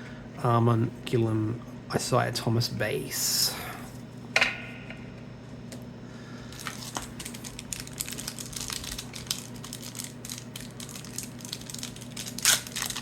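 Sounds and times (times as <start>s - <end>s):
card pack wrapper crinkling: 6.5s - 13.0s.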